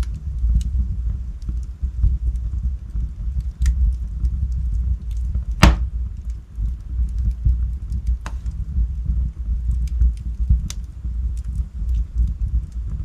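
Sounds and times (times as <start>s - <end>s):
log fire rumbling and crackling: 0.0s - 13.0s
loud sharp pops from fire: 4.5s - 8.7s.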